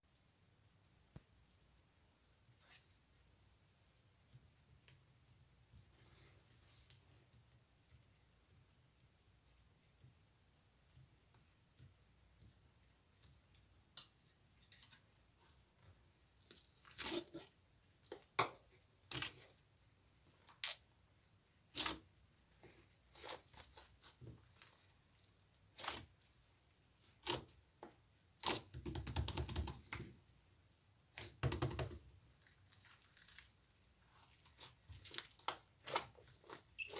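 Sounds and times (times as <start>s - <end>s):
crinkling and crackling: 32.3s - 36.9s.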